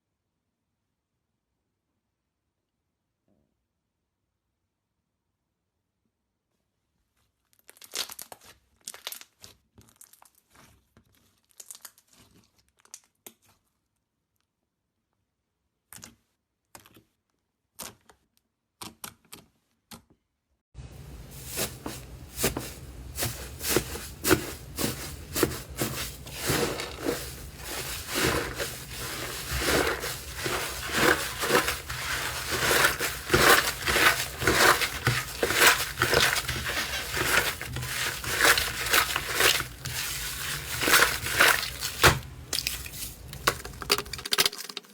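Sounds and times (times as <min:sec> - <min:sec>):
slime popping and crackling: 0:26.4 - 0:44.9.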